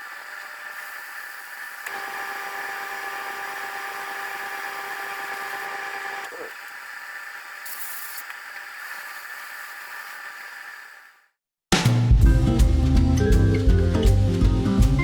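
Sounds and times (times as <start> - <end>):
short sharp hiss: 7.6 - 10.2
spray gun air hiss: 7.6 - 10.4.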